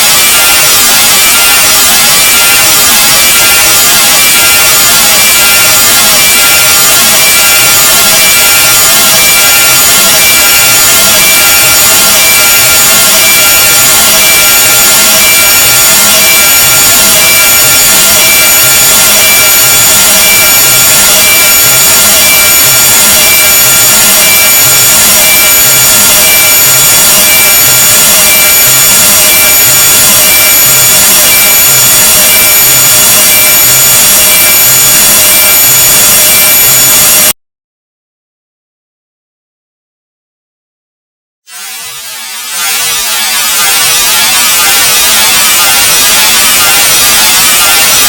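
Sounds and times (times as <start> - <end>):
steady whining tones: 0.0 - 37.3, 41.5 - 48.0
harsh rasping noise: 41.5 - 48.0.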